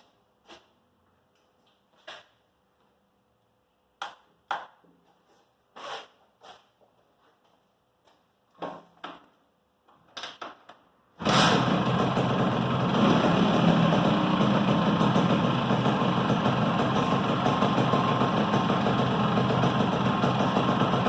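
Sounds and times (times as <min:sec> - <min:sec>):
two-stroke engine running: 0:11.2 - 0:21.0.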